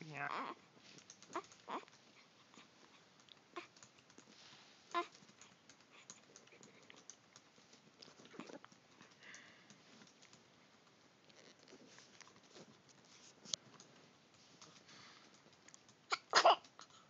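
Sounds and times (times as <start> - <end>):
faint scattered ticks: 0.1 - 17.0
person sneezing: 16.1 - 16.6.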